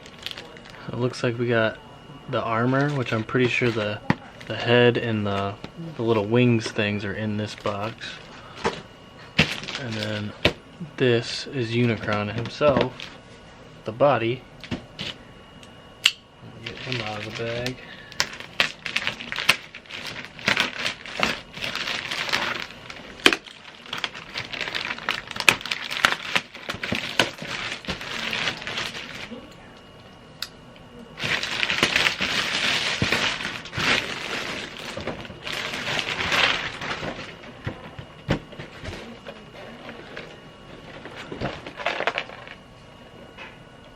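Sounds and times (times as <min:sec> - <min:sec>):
plastic bag crinkling: 0:00.0 - 0:01.0, 0:09.4 - 0:10.4, 0:16.6 - 0:29.6, 0:31.2 - 0:42.6.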